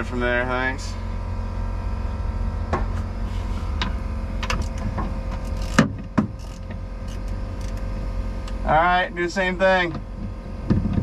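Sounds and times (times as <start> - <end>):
steady low hum: 0.0 - 11.0.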